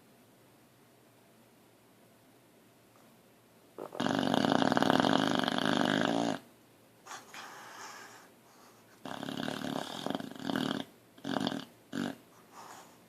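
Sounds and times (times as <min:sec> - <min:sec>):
dog snoring: 0:03.8 - 0:06.5, 0:09.0 - 0:12.7.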